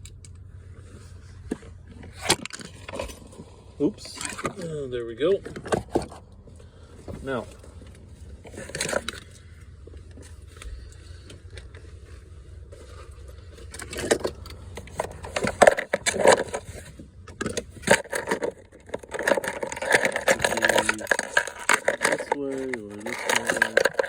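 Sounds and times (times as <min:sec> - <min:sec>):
low steady hum: 0:00.0 - 0:24.0
plastic clicks and scrapes: 0:01.5 - 0:03.3, 0:04.1 - 0:04.7, 0:08.4 - 0:09.4, 0:13.6 - 0:24.0.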